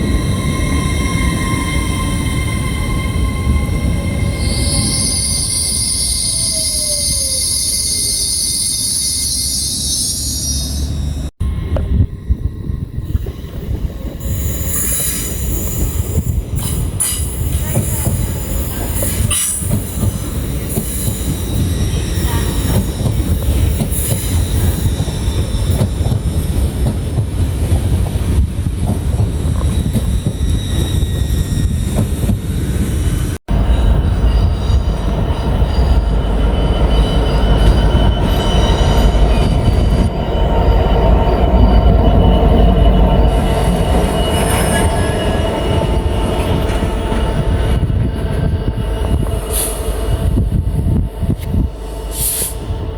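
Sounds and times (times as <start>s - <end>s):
wheels squealing on rails: 0.0s - 28.0s, 28.9s - 52.9s
train rumbling: 0.0s - 52.9s.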